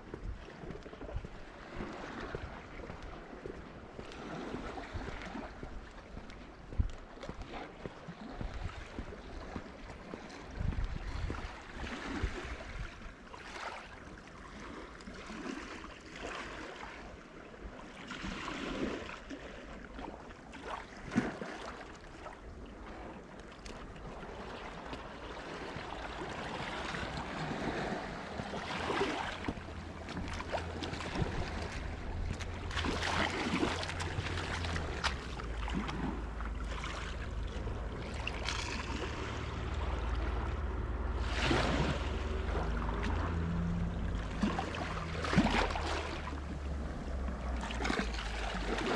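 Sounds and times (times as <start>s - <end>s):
sea water lapping: 0.0s - 48.9s
wind buffeting microphone: 10.4s - 13.1s, 25.4s - 45.5s
small splashes and knocks: 17.9s - 48.9s.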